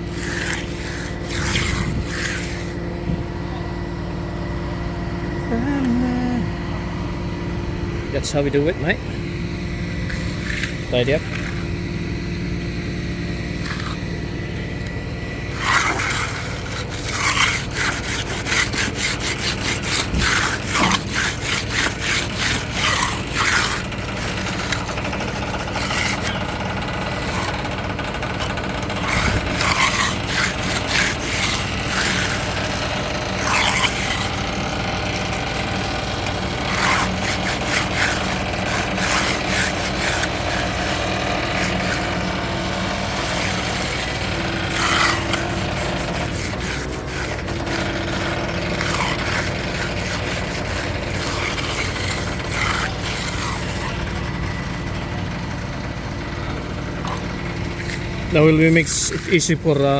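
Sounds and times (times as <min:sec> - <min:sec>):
hand tool scraping wet concrete: 0:00.0 - 0:02.9, 0:05.5 - 0:06.4, 0:08.2 - 0:11.8, 0:13.4 - 0:59.9
engine running steadily: 0:00.0 - 0:59.9.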